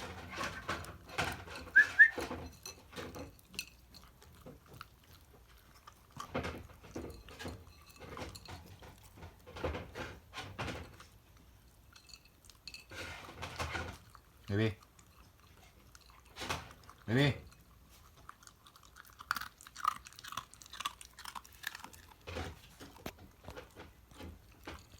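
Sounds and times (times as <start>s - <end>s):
dog crunching and smacking food: 0.0s - 24.9s
dog whimpering: 1.8s - 2.2s.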